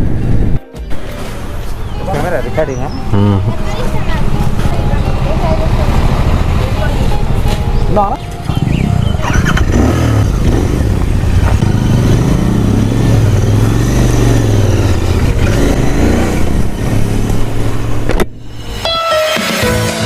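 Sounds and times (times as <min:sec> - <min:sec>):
music: 0:00.6 - 0:09.8, 0:18.5 - 0:20.0
motorcycle engine revving: 0:01.3 - 0:18.8.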